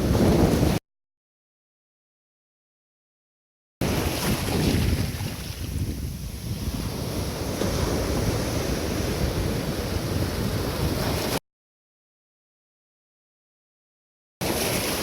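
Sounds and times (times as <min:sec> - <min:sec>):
wind buffeting microphone: 0:00.0 - 0:00.8, 0:03.9 - 0:11.4
surf breaking on rocky shore: 0:03.8 - 0:11.4.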